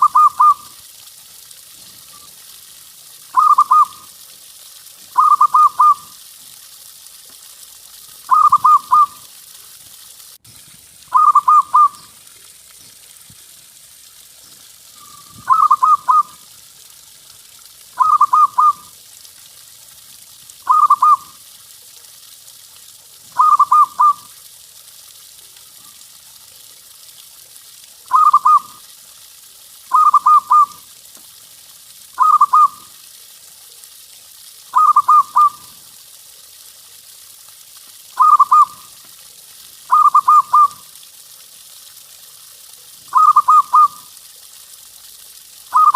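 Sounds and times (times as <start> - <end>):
dove cooing: 0.0 - 0.7, 3.3 - 4.0, 5.2 - 6.1, 8.3 - 9.2, 11.1 - 12.1, 15.0 - 16.4, 18.0 - 18.9, 20.7 - 21.3, 23.4 - 24.3, 28.1 - 28.7, 32.2 - 32.8, 34.8 - 35.6, 38.2 - 38.8, 39.9 - 40.8, 43.1 - 44.0.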